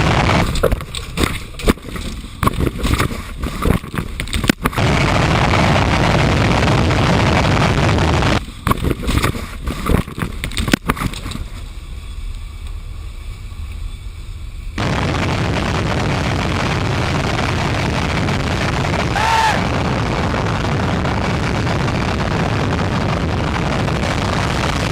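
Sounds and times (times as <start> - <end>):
crackling pops: 0.0 - 11.6
jet engine running: 14.8 - 24.2.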